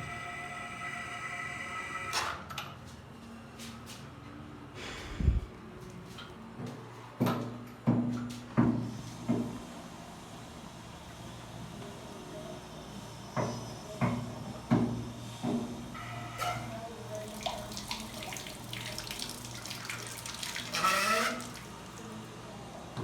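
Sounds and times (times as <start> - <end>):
water splashing in toilet cistern: 17.2 - 22.2.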